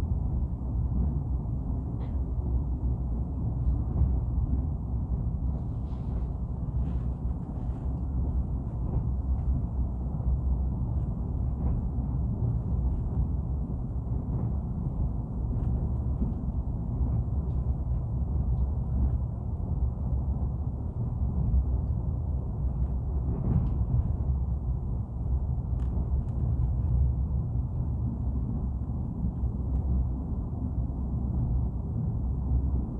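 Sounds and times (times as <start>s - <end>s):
steady low rumbling noise: 0.0s - 32.9s.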